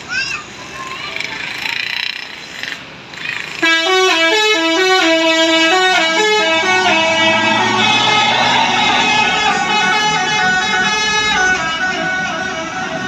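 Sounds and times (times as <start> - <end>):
musical air horn melody: 3.6 - 13.0.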